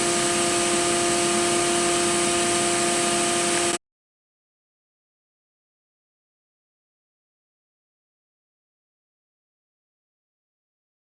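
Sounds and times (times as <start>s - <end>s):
machining center humming and whining: 0.0s - 3.8s.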